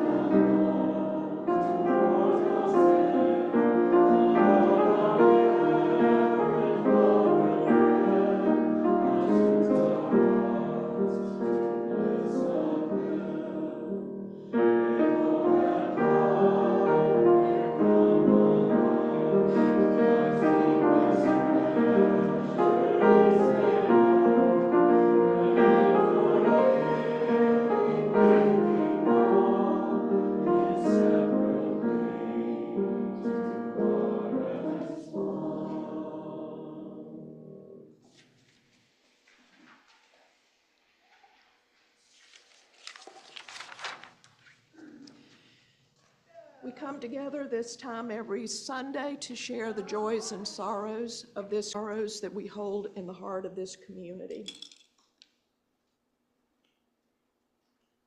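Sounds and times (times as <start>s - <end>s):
piano accompaniment: 0.0s - 37.9s
congregation singing a hymn: 0.0s - 38.0s, 49.4s - 51.4s.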